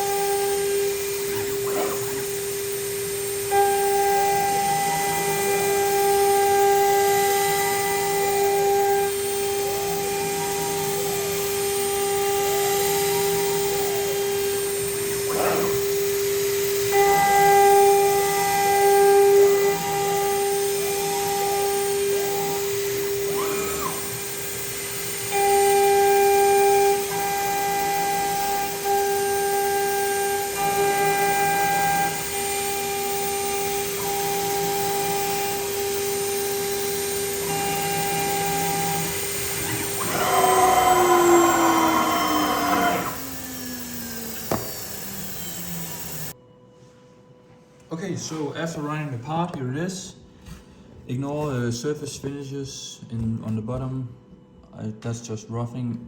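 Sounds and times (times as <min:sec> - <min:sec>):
spindle whining: 0:00.0 - 0:46.4
stepper motors rising and falling: 0:21.8 - 0:46.4.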